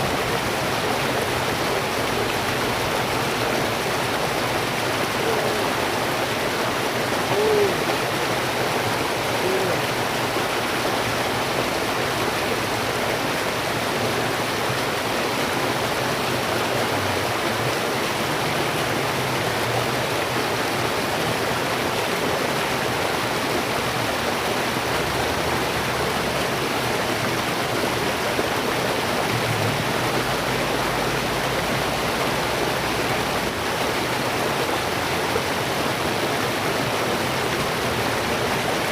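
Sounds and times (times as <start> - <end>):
flowing water rushing: 0.0 - 38.9.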